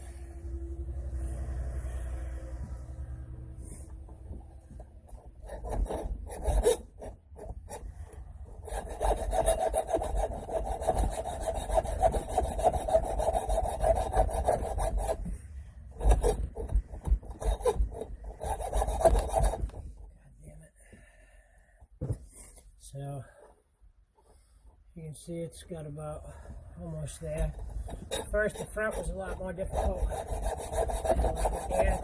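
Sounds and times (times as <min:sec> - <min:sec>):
metal rasping against metal: 0:04.6 - 0:20.1, 0:26.3 - 0:32.0.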